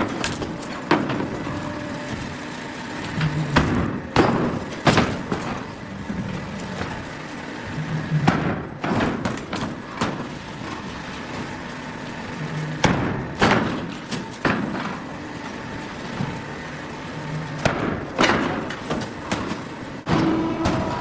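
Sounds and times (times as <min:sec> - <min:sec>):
machine thuds and knocks: 0:00.0 - 0:01.5, 0:03.2 - 0:05.7, 0:08.2 - 0:10.3, 0:12.8 - 0:15.0, 0:17.6 - 0:21.0
steady machine hum: 0:00.0 - 0:21.0.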